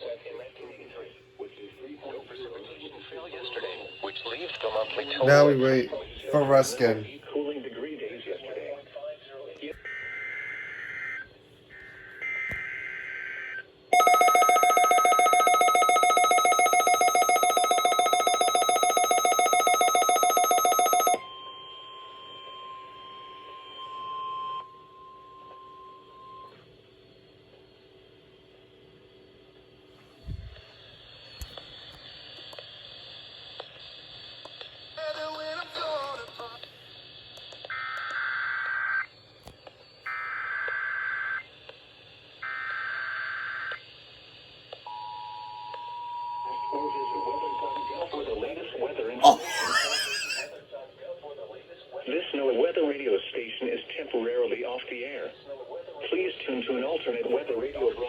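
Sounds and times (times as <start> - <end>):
faint steady tone: 13.9 - 27.8
pulsing electronic alarm tone: 14.0 - 21.2.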